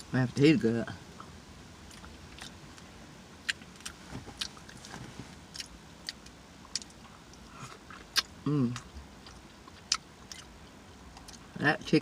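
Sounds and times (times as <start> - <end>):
person chewing with mouth smacking: 1.9 - 11.5.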